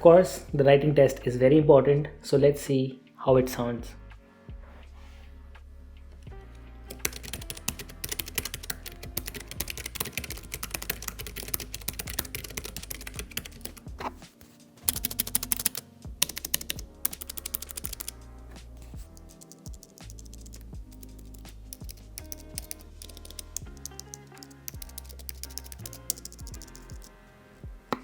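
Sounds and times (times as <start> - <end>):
background music: 0.0 - 28.0
mechanical keyboard typing: 6.9 - 14.1, 14.9 - 18.2, 18.9 - 27.1.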